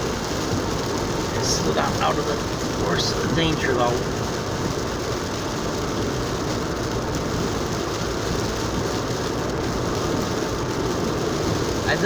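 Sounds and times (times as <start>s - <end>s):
car engine drone: 0.0s - 12.0s
tyre hiss on wet road: 0.0s - 12.0s.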